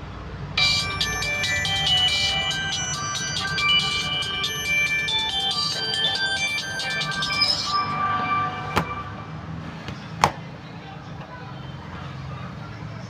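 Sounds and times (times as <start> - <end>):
ringtone melody on phone speaker: 0.6 - 9.6.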